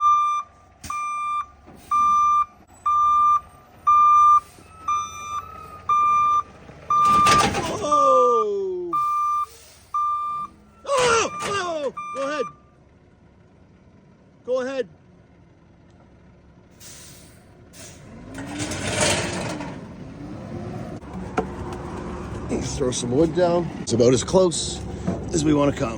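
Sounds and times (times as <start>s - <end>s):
truck reversing alarm beeping: 0.0s - 12.8s
faint low engine rumble: 0.0s - 25.9s.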